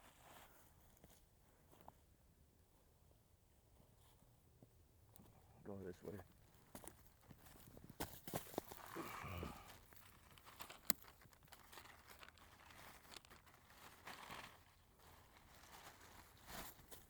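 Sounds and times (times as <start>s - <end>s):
footsteps crunching through dry brush: 6.4s - 17.0s.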